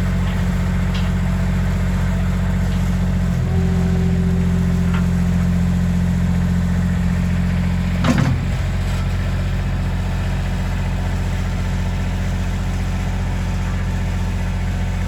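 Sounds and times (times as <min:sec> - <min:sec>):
diesel engine idling: 0:00.0 - 0:15.0.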